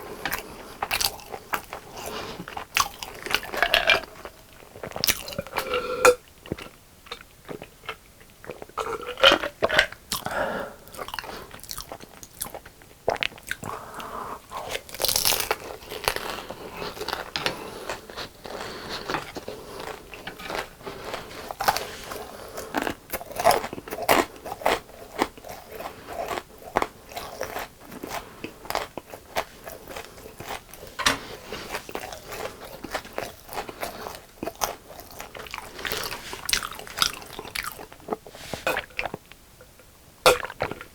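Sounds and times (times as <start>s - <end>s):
crispy chicken crunching: 0.0s - 5.8s, 14.5s - 39.2s
quiet chewing: 0.0s - 40.9s.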